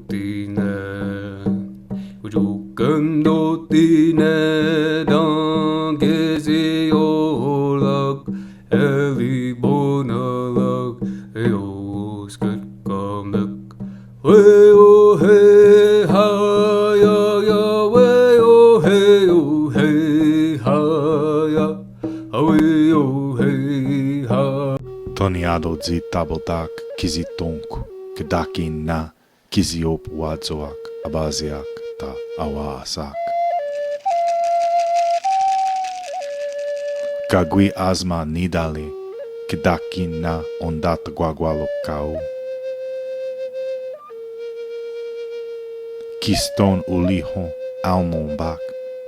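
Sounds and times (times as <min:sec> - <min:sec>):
instrumental accompaniment: 0:00.0 - 0:08.5, 0:12.4 - 0:24.2, 0:24.8 - 0:29.0, 0:29.8 - 0:49.0
person singing chant-like melody: 0:14.3 - 0:21.8.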